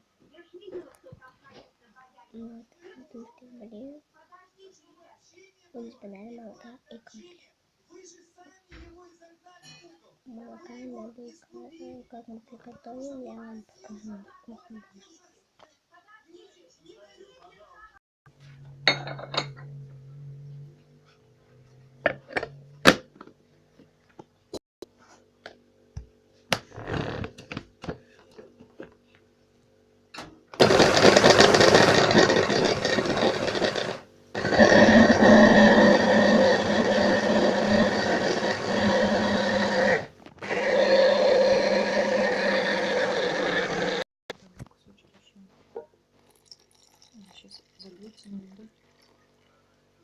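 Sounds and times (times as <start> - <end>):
kitchen things clicking and knocking: 18.7 - 19.7
electric blender running: 30.6 - 44.1.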